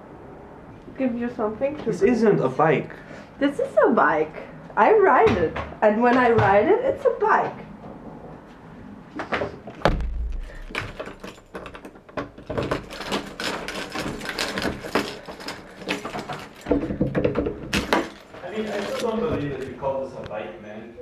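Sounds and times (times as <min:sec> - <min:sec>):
objects knocking and rattling: 0:09.3 - 0:19.8
low thump: 0:09.8 - 0:11.5.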